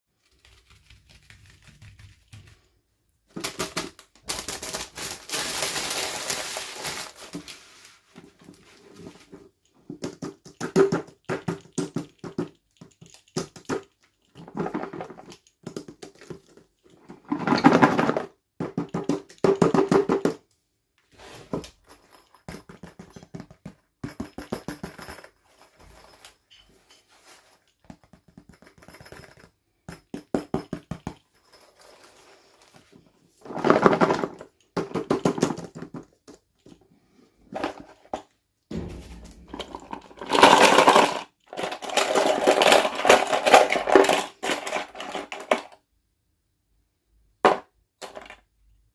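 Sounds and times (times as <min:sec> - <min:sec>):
packaging rustling and crinkling: 0:03.4 - 0:09.4.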